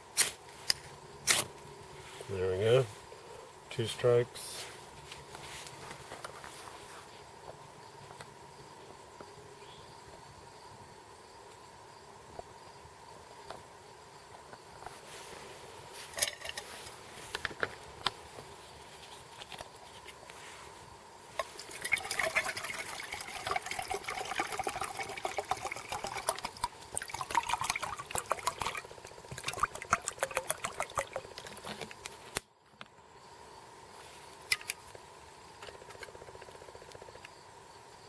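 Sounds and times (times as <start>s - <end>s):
water pouring into metal pot: 21.4s - 32.0s.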